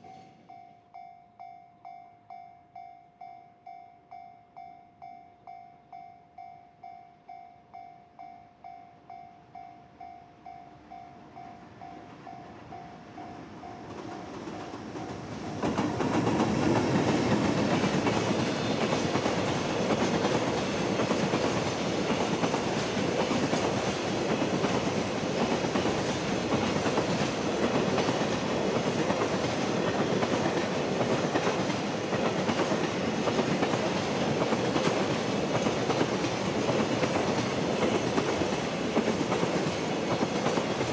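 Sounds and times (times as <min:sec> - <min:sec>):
freight train passing: 0:08.6 - 0:40.9.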